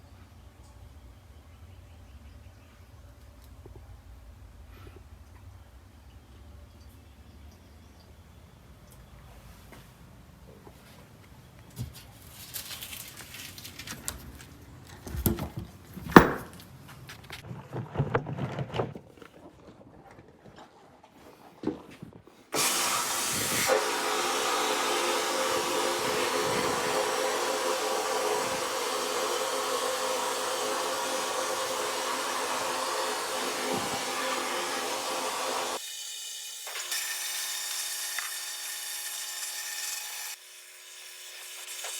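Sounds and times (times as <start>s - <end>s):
knocks and clunks: 15.2s - 16.6s, 17.4s - 19.7s
vapor blaster nozzle hissing: 22.6s - 35.8s.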